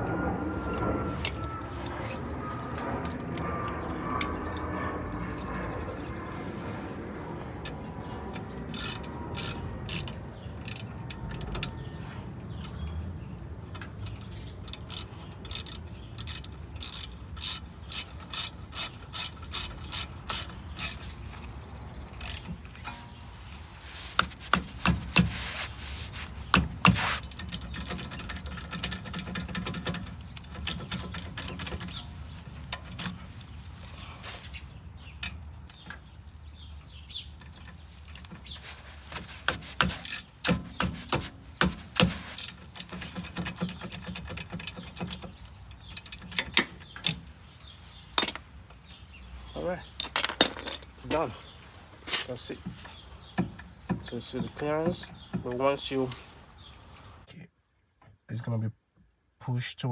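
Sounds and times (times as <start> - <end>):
ratchet wrench clicking: 8.7 - 11.7, 14.0 - 21.1, 22.2 - 22.5.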